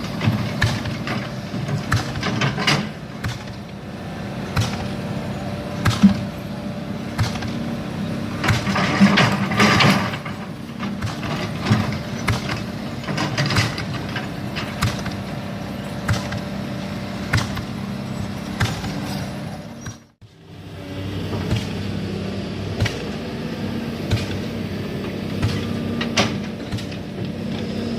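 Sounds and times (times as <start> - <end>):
machine knocks and clanks: 0.0 - 3.7, 5.8 - 6.4, 8.3 - 15.3, 15.9 - 16.5, 18.5 - 19.2, 25.3 - 27.6
excavator diesel engine running: 0.0 - 27.9.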